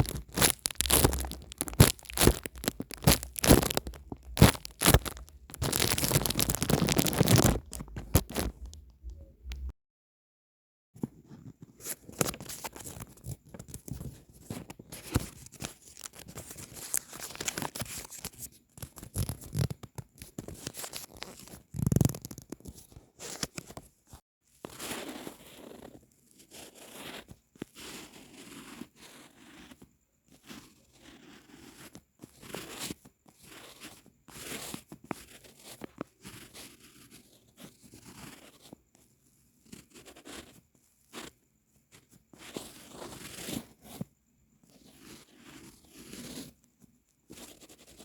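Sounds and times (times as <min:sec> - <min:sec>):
paper crinkling and tearing: 0:00.0 - 0:09.7, 0:15.6 - 0:18.2.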